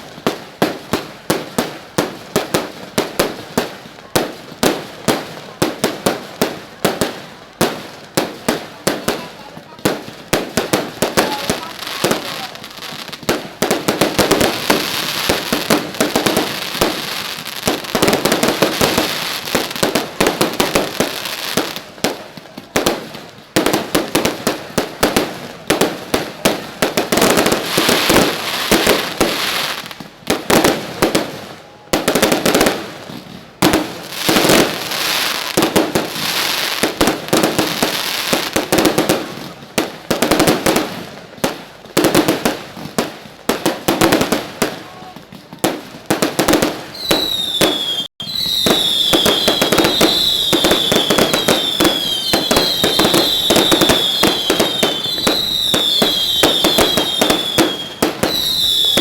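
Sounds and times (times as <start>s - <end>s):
fireworks exploding: 0.0s - 59.0s.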